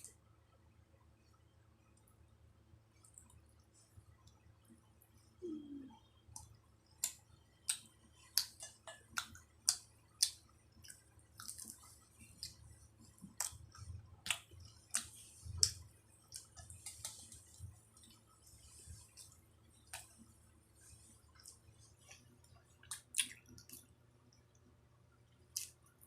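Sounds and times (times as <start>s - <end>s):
person chewing crisp food: 7.0s - 18.3s, 21.0s - 23.9s.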